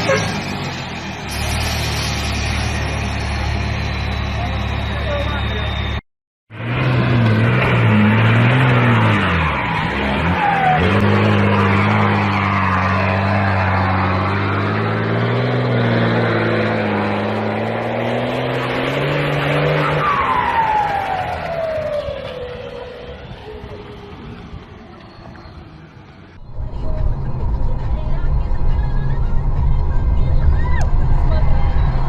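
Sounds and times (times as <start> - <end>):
high squeal gliding downward: 1.1 - 6.0, 7.9 - 32.0
vehicle engine running: 21.4 - 32.0.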